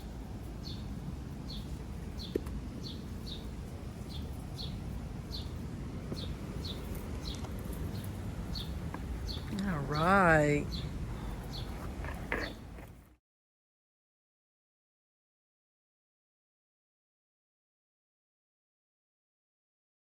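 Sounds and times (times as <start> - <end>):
small bird chirping: 0.0 - 12.9
low background rumble: 0.0 - 13.1.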